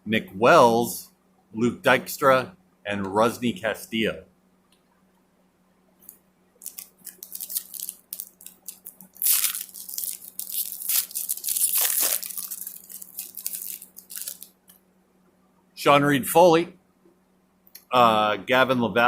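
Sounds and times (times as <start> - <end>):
trading cards and foil wrapper rustling: 6.6 - 14.5.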